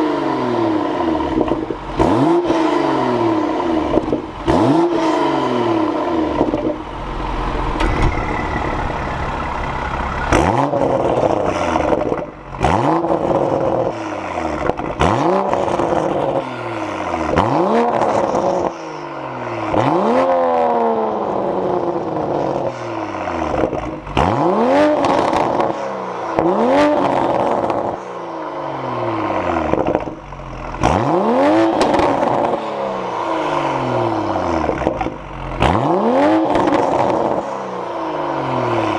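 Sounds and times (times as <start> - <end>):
car engine revving: 0.0 - 18.7, 29.3 - 38.9.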